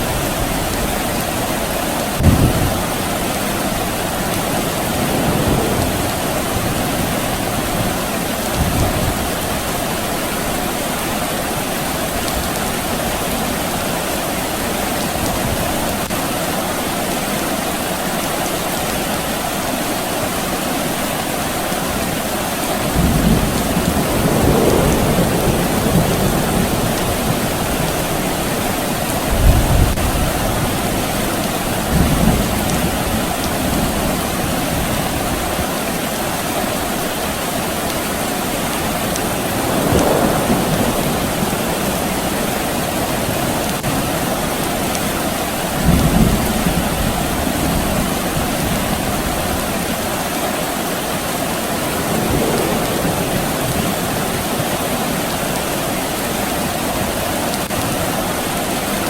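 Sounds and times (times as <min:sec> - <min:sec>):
steady rain falling: 0:00.0 - 0:59.0
distant thunder rumbling: 0:00.2 - 0:09.8, 0:22.8 - 0:35.8, 0:38.5 - 0:49.6, 0:51.8 - 0:55.8.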